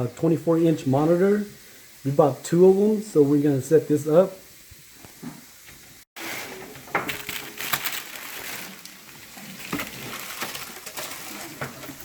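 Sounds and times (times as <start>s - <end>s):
packaging crackling and crunching: 6.2s - 12.0s.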